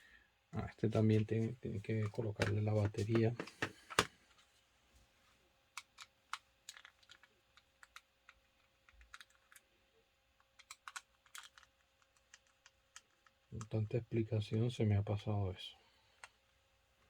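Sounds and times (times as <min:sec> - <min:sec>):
small plastic clicks and taps: 0:10.5 - 0:13.7.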